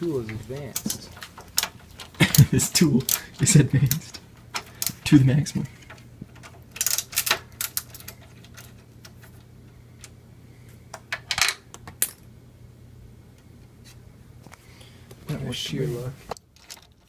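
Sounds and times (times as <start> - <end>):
faint low hum: 0.0 - 17.0
small metal parts clinking: 5.7 - 9.4, 16.4 - 17.0.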